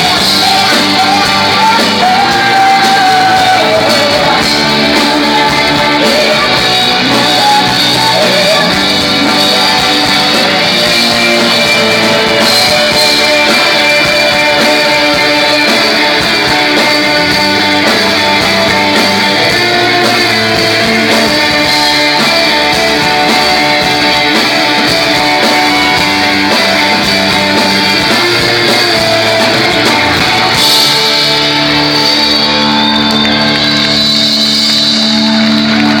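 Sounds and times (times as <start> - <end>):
live band playing: 0.0 - 36.0
person singing: 0.0 - 36.0.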